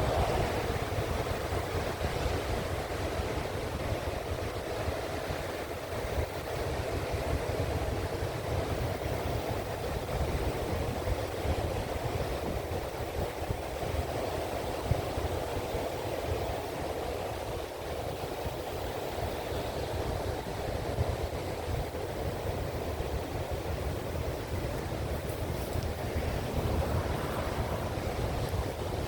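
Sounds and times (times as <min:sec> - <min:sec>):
surf rushing: 0:00.0 - 0:03.8, 0:21.5 - 0:29.0
wind buffeting microphone: 0:00.0 - 0:29.0.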